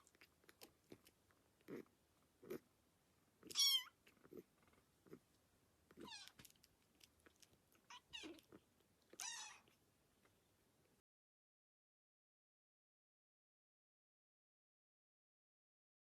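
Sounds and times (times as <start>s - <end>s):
soft low kitten sounds: 0.0s - 2.7s, 3.4s - 11.0s
kitten mewing: 3.4s - 4.4s, 5.9s - 6.5s, 7.2s - 9.8s.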